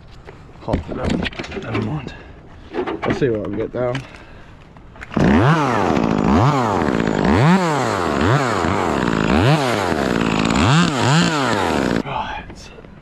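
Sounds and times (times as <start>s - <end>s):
chainsaw revving: 5.1s - 12.0s.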